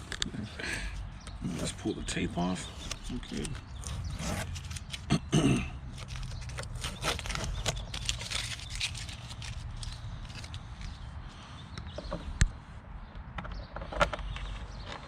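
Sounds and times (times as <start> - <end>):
masking tape peeling: 2.7 - 5.1, 5.9 - 10.6
cough-like voice: 5.1 - 5.8.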